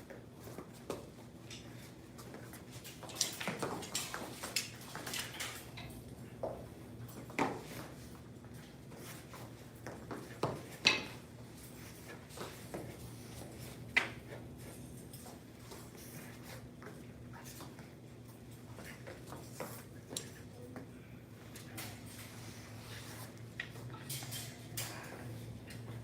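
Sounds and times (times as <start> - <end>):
steady low hum: 0.0 - 26.0
metal knives clinking: 23.7 - 25.2.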